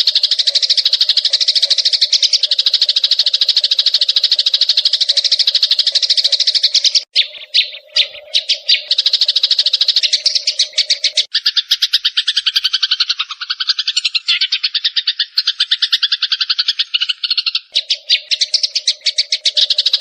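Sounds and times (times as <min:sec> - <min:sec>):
sparrows chirping: 0:00.0 - 0:20.0.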